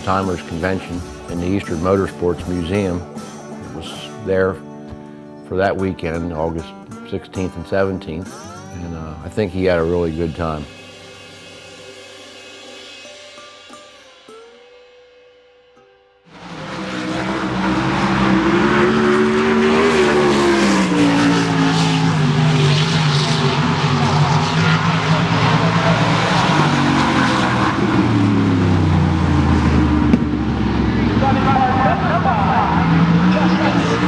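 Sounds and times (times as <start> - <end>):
racing car engine revving: 0.0 - 5.2, 16.3 - 34.0
guitar music: 0.0 - 34.0.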